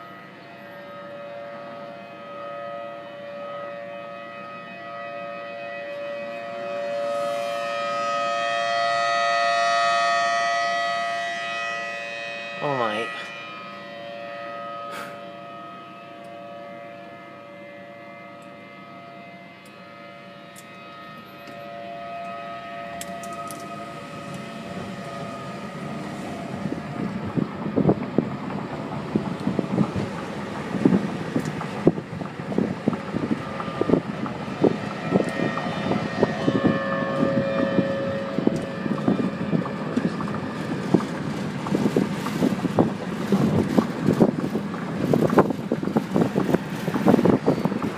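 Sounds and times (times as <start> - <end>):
warning siren steady tone: 0.0 - 47.9
rumbling with sudden knocks: 24.6 - 47.9.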